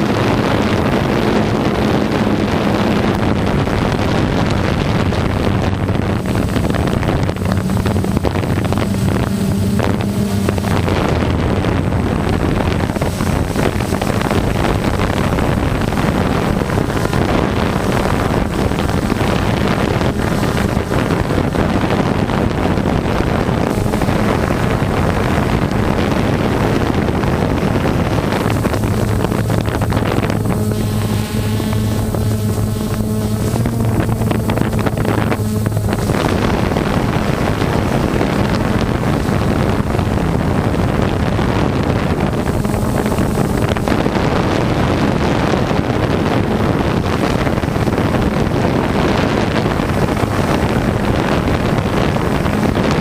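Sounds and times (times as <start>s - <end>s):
low steady hum: 0.0s - 53.0s
wind buffeting microphone: 0.0s - 53.0s.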